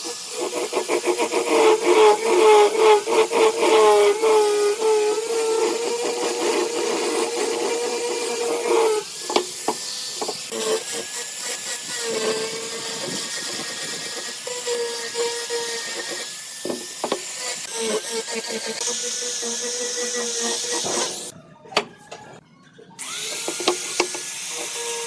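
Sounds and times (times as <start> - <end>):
power tool whine: 0.0 - 21.3, 23.0 - 25.0.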